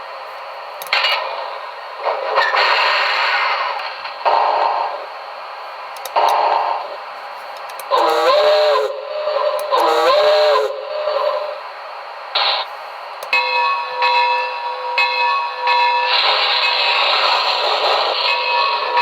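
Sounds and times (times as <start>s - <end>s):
steam whistle blasts: 7.9s - 11.6s.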